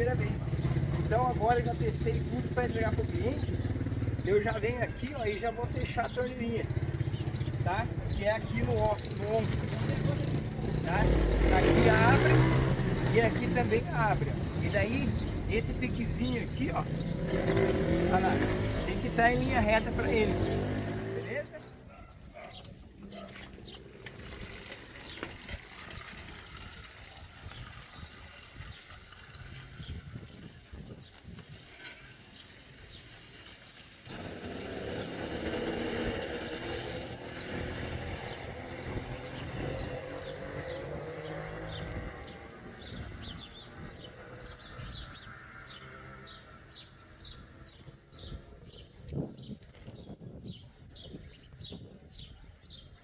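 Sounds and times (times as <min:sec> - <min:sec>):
bird chirping: 0:00.0 - 0:26.1.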